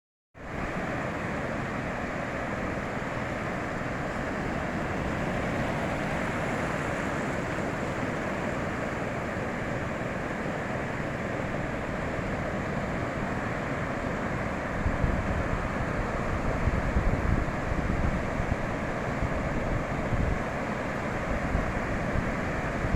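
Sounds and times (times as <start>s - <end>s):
ocean surf washing onto beach: 0.4s - 22.9s
wind buffeting microphone: 14.6s - 20.6s.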